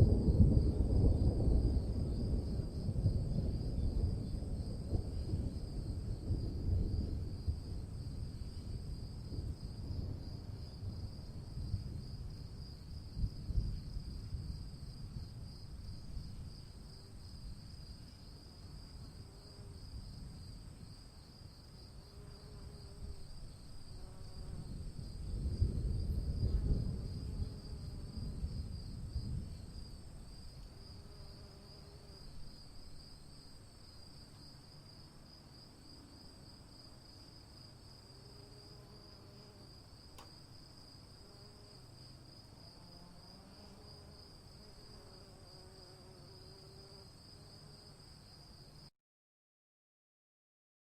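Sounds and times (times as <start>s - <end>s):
distant thunder rumbling: 0.0s - 12.4s, 24.6s - 30.1s
crickets trilling: 0.0s - 48.9s.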